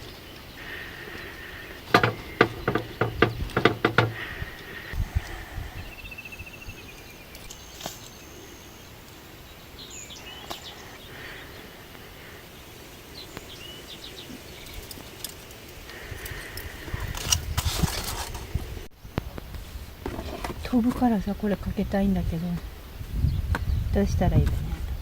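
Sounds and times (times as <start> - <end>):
small birds chirping: 0.0 - 19.8, 20.5 - 25.0
rustling and clattering: 1.5 - 5.0, 14.5 - 21.2.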